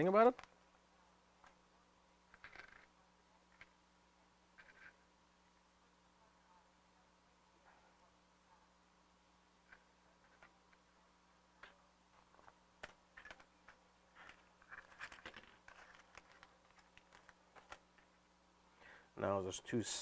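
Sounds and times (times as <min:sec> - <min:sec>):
small plastic parts clicking: 0:12.4 - 0:18.1.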